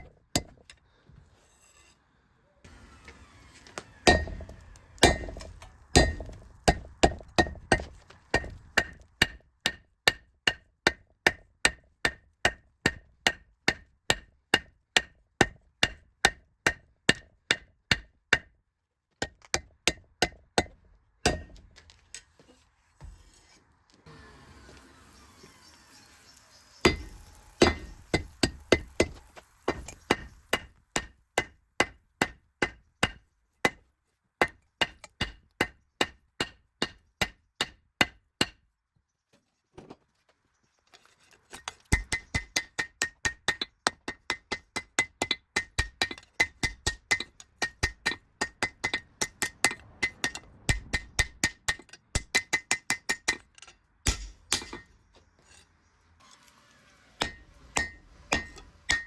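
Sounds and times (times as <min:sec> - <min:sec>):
hammer striking steel on anvil: 0:04.0 - 0:11.0, 0:19.9 - 0:21.6, 0:26.8 - 0:33.8, 0:44.3 - 0:55.6, 0:57.2 - 0:59.0.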